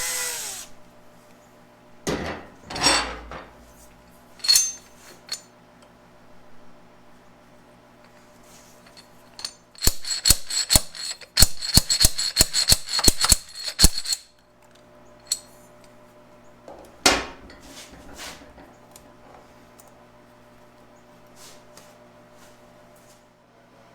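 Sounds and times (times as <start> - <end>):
clunk: 2.0 - 3.6.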